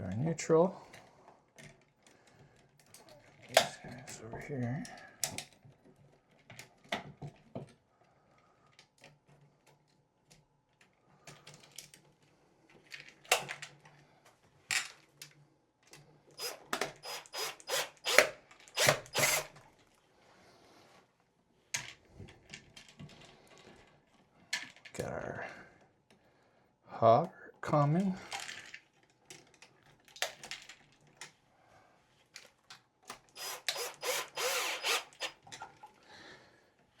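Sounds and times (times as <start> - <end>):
clicks and taps of wiring work: 5.2 - 7.8, 13.2 - 13.8.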